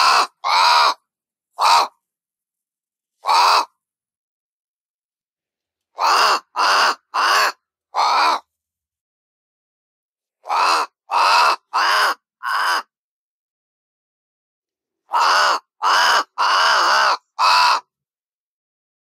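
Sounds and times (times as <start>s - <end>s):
crow cawing: 0.0s - 1.0s, 1.6s - 1.9s, 3.2s - 3.7s, 6.0s - 8.5s, 10.4s - 12.9s, 15.1s - 17.9s.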